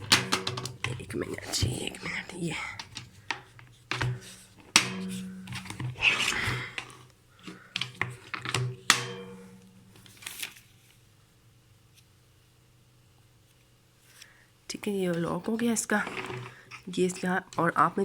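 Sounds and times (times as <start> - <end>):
plastic clicks and knocks: 0.0 - 1.8, 2.7 - 6.9, 7.5 - 9.0
rustling: 0.0 - 11.0.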